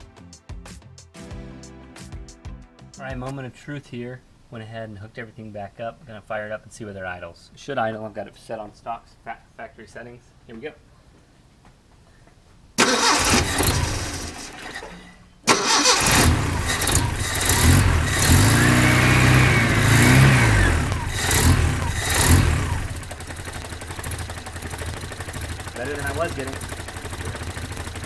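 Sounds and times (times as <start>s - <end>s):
car engine starting and revving: 12.8s - 14.9s, 15.5s - 28.0s.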